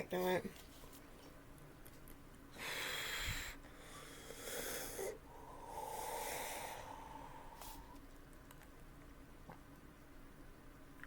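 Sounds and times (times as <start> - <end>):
woman breathing heavily: 2.5 - 8.0.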